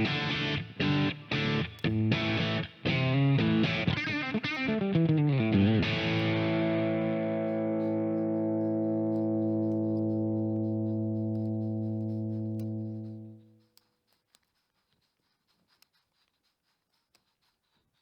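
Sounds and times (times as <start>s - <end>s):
guitar chords with effects: 0.0s - 13.3s.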